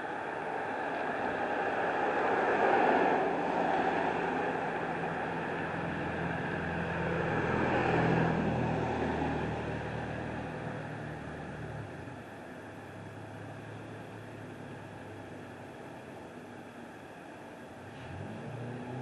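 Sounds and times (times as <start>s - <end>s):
vehicle passing by: 0.5s - 11.9s.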